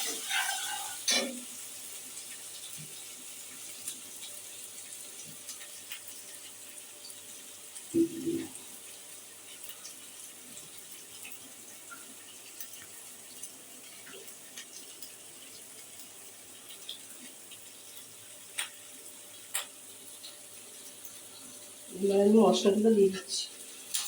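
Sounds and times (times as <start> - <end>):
paste sizzling in oil: 0.0 - 7.8
small crackles: 0.0 - 21.9, 23.1 - 24.0.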